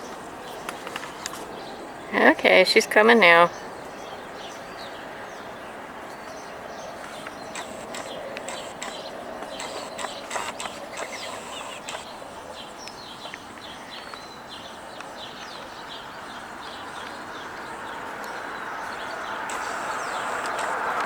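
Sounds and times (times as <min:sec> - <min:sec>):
songbird chirping: 0:00.0 - 0:21.0
steady rushing noise: 0:06.9 - 0:13.3, 0:18.9 - 0:21.0
clicks: 0:07.0 - 0:12.1, 0:19.5 - 0:21.0.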